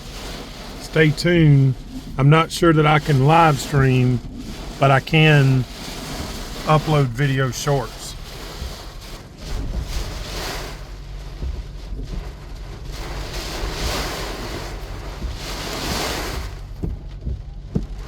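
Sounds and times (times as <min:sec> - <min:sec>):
gusty wind on microphone: 0:00.0 - 0:18.0
short low knocks: 0:16.4 - 0:18.0.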